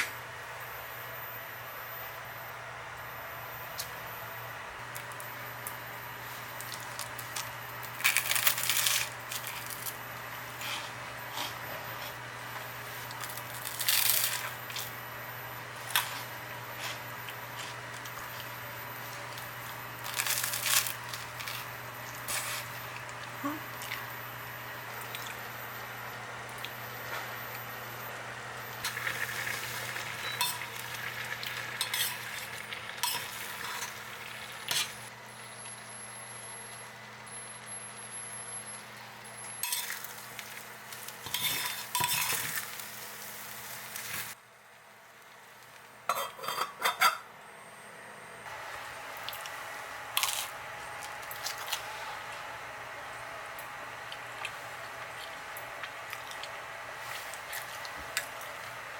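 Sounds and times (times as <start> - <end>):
food sizzling in a pan: 28.8 - 36.4, 39.4 - 44.4.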